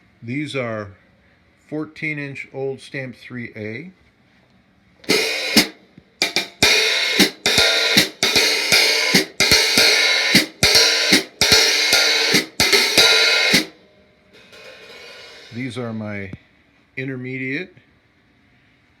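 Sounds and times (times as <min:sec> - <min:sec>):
hi-hats played with a stick: 0:05.0 - 0:15.9.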